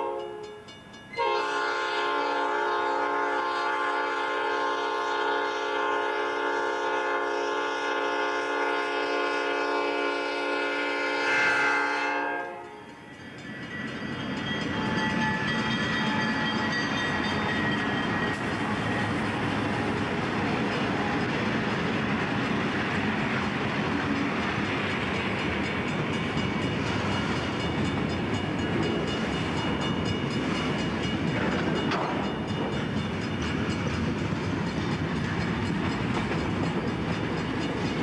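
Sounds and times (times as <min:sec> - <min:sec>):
train air horn blast: 0:00.0 - 0:00.4, 0:01.2 - 0:12.8
train rumble and wheel noise: 0:00.0 - 0:38.0.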